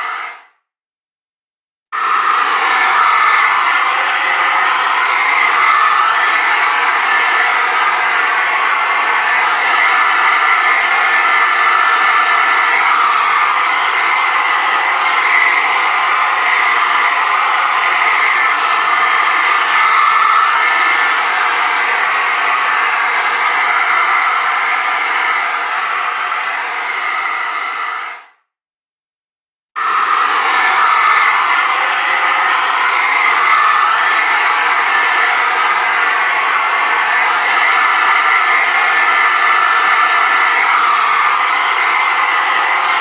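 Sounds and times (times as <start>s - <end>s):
hairdryer running: 0.0s - 0.5s, 2.0s - 28.3s, 29.8s - 43.0s.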